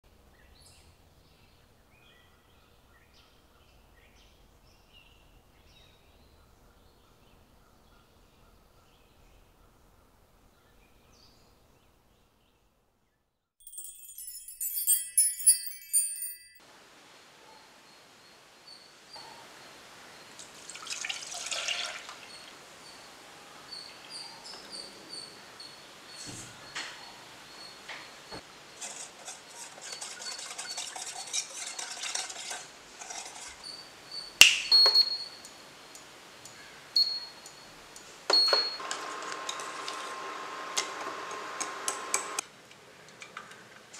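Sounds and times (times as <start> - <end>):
high-pitched tinkling chime: 13.6 - 16.6
loud ringing metal clink: 13.6 - 16.6
faint steady hiss: 16.6 - 29.9, 32.6 - 38.5
spoon stirring in metal vessel: 28.7 - 34.3.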